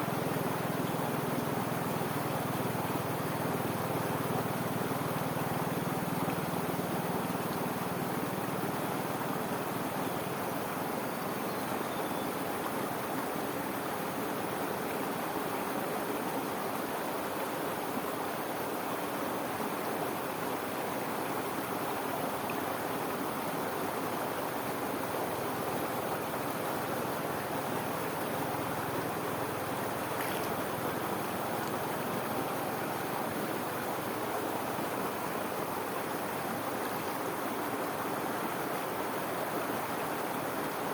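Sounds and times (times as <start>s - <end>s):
water rushing over waterfall: 23.8s - 40.9s.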